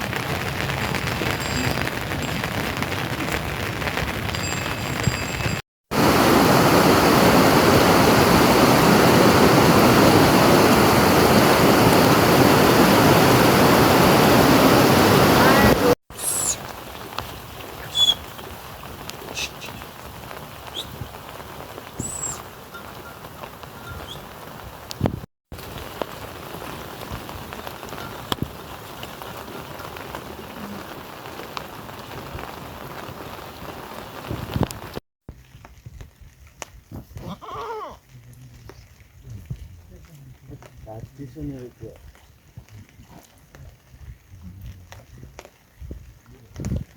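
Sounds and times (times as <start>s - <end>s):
rushing water: 0.0s - 35.0s
steady rain: 0.0s - 46.9s.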